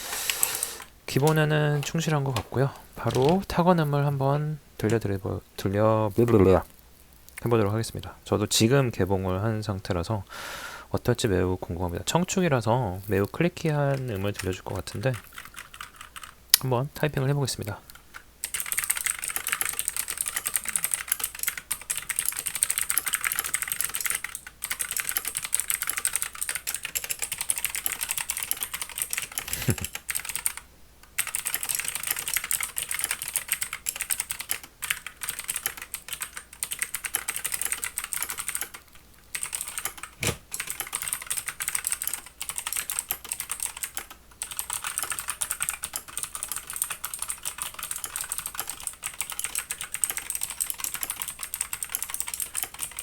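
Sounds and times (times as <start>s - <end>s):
mechanical keyboard typing clicks: 17.9s - 53.0s.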